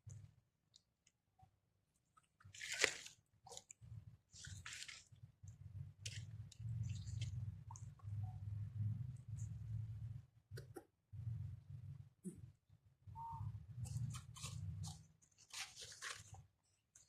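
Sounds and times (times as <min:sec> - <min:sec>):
wet chewing and crunching: 0:02.2 - 0:08.1.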